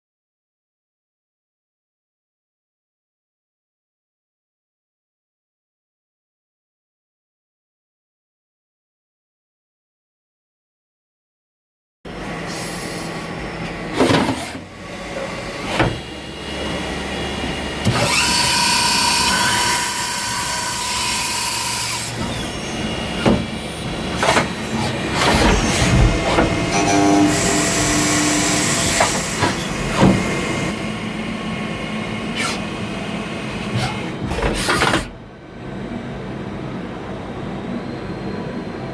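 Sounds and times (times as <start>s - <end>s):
lathe motors whining: 12.1s - 36.5s.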